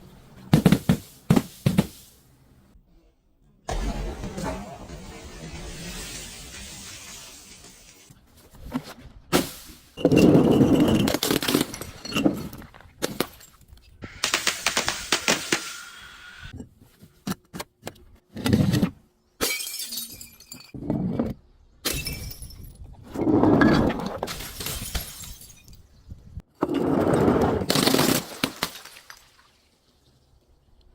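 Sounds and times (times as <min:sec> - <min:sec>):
glass smashing and crunching: 0:24.3 - 0:25.8.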